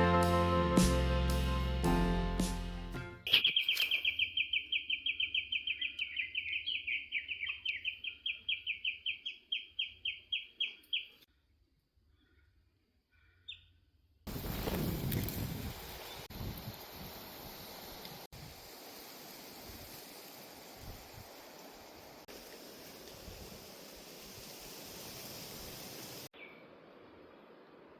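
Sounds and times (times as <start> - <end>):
guitar music: 0.0 - 3.2.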